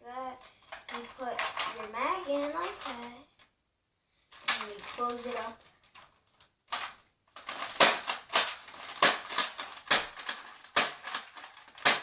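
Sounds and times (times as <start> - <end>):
plastic toy blaster clicks: 0.7 - 3.1, 4.4 - 5.6, 6.7 - 12.0.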